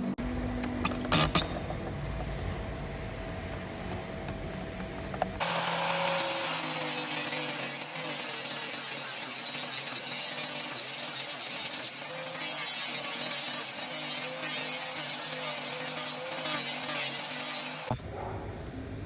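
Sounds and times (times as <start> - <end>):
power tool working wood: 5.4 - 18.0
steady hissing tool noise: 5.4 - 18.0.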